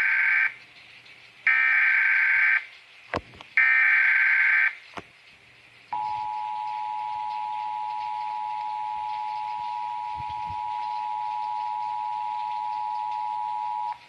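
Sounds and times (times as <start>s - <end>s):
buzzing data tones: 5.9s - 14.0s
two-tone attention signal: 6.0s - 14.0s.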